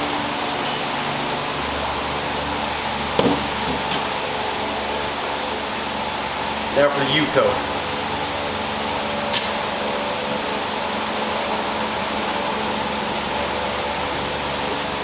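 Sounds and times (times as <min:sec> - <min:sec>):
electric fan humming: 0:00.0 - 0:15.0
match being struck: 0:09.3 - 0:09.6.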